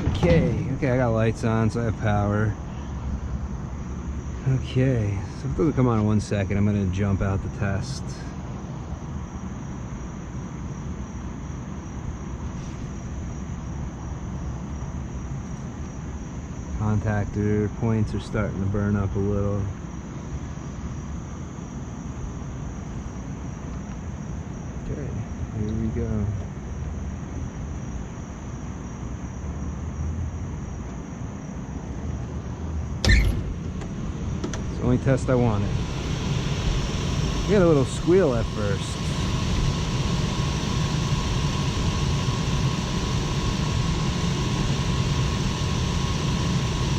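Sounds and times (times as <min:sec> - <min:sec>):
sharp knock: 0:00.0 - 0:00.8
hvac machinery rumbling: 0:00.0 - 0:29.4, 0:30.4 - 0:46.9
faint high-pitched whine: 0:33.0 - 0:46.9.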